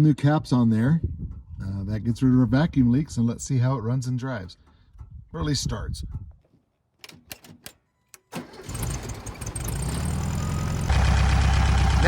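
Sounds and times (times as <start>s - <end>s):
car engine starting and idling: 8.2s - 12.0s.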